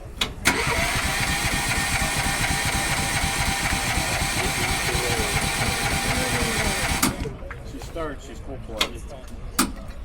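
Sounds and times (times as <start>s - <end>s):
engine idling: 0.4s - 7.3s.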